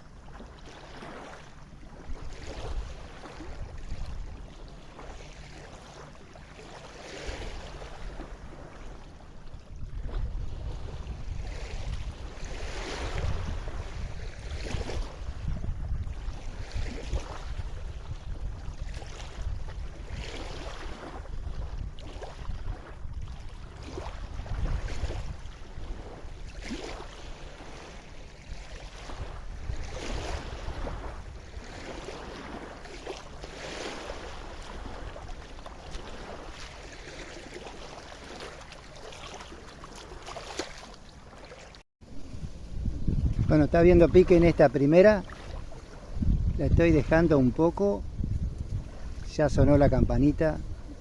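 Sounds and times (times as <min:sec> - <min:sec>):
small waves lapping: 0:00.0 - 0:51.0
wind gusting over microphone: 0:09.7 - 0:27.9, 0:28.5 - 0:37.0, 0:42.0 - 0:51.0.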